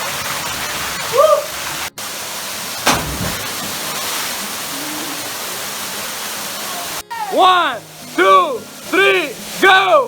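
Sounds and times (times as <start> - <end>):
waterfall rushing: 0.9 - 9.6
sudden thump: 2.8 - 3.8.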